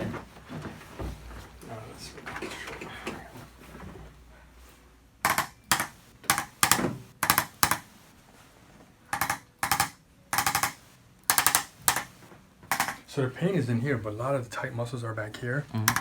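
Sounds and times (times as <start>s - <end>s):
percussion massager buzzing: 5.2s - 7.9s, 9.1s - 13.1s, 15.7s - 16.0s.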